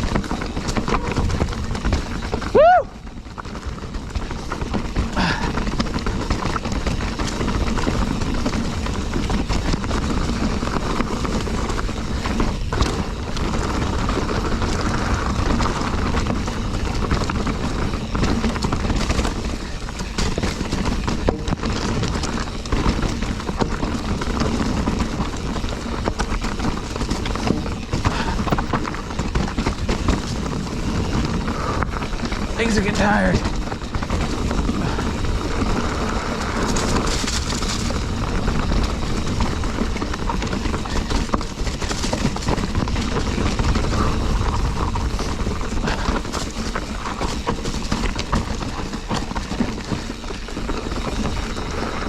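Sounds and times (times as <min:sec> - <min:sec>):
mountain bike rattling over rocks: 0:00.0 - 0:52.0
wind on microphone: 0:29.8 - 0:49.1.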